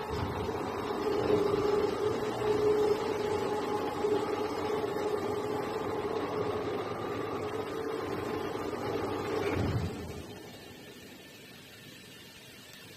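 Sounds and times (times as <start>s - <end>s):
industrial turntable drive humming: 0.0s - 12.9s.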